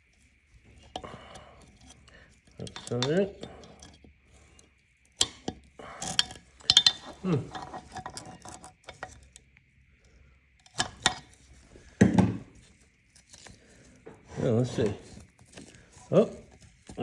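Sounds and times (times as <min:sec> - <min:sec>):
metal parts clinking and scraping: 0:00.8 - 0:04.1, 0:05.2 - 0:09.4, 0:10.6 - 0:11.6.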